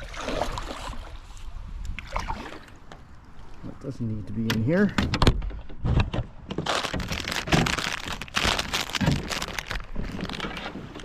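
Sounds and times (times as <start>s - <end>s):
crinkling and rustling: 4.3s - 11.0s.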